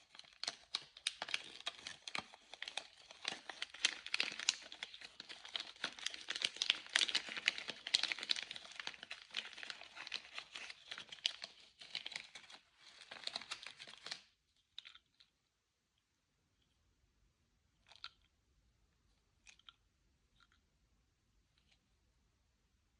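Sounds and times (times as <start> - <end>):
candy wrapper crinkling: 0.0 - 15.3.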